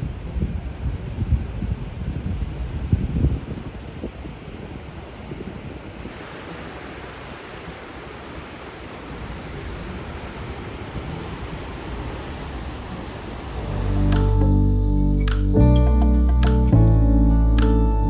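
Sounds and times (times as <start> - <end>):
wind and sea water rushing: 0.0 - 14.5.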